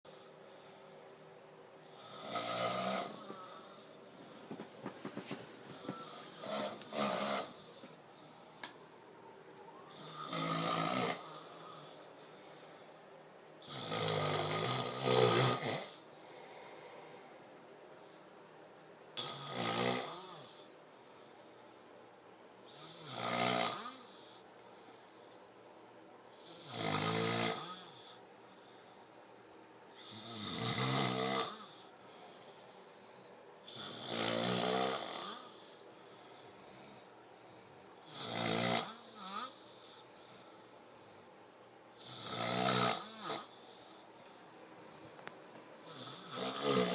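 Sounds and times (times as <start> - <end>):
person snoring heavily: 1.9 - 7.9, 9.9 - 12.1, 13.6 - 16.1, 19.2 - 20.7, 22.7 - 24.4, 26.4 - 28.2, 30.0 - 32.0, 33.7 - 37.1, 38.0 - 40.1, 42.0 - 44.1, 45.8 - 46.9.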